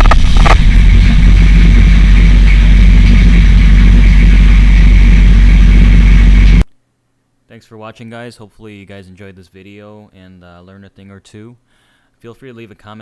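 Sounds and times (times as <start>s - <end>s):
diesel engine running: 0.0s - 6.6s.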